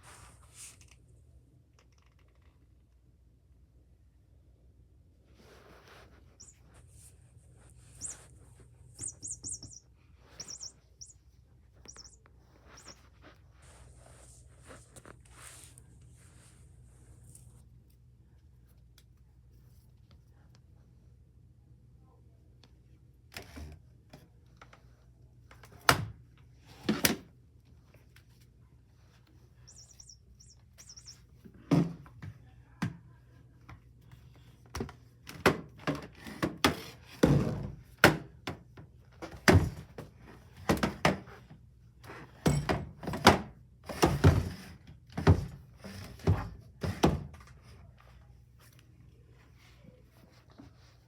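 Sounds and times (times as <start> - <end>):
high squeaks: 6.4 - 6.7, 7.9 - 13.1, 29.7 - 31.3.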